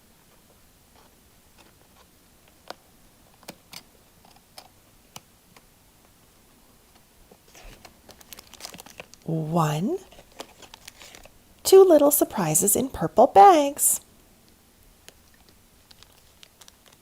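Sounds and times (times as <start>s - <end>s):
package crinkling and rustling: 6.9s - 9.3s, 10.0s - 11.4s, 15.0s - 17.0s.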